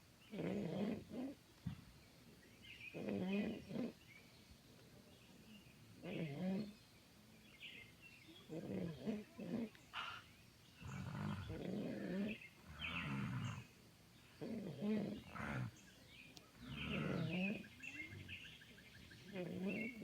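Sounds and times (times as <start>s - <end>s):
heavy human snoring: 10.8s - 13.6s, 14.4s - 15.7s, 16.6s - 18.3s.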